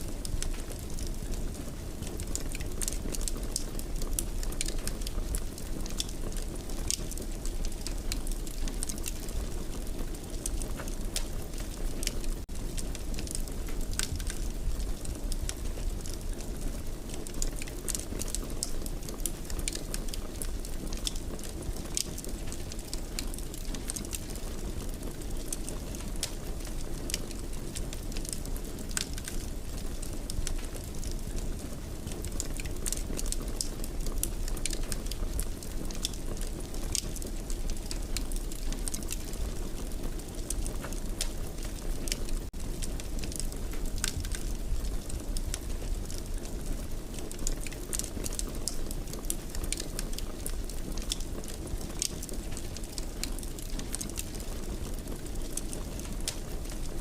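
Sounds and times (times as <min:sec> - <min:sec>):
wood fire crackling: 0:00.0 - 0:57.0.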